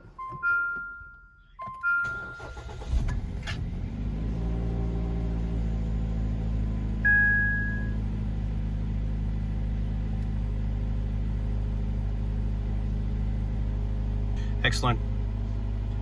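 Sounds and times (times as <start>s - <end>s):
car engine idling: 2.3s - 16.0s
short electronic beep: 7.0s - 8.0s.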